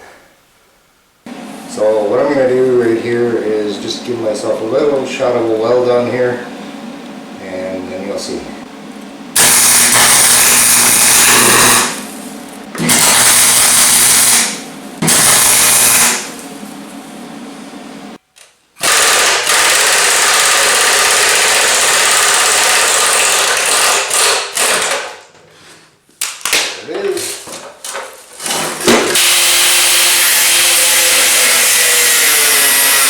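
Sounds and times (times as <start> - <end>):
electric welder arc: 9.4 - 16.5, 18.8 - 25.3, 28.4 - 33.0.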